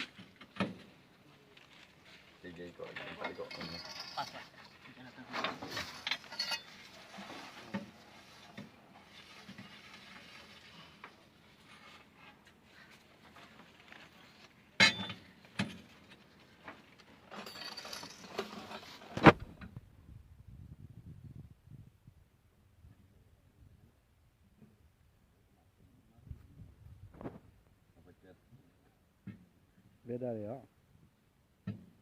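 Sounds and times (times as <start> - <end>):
metal tools clinking: 2.9 - 7.0, 14.8 - 15.2, 17.3 - 18.9.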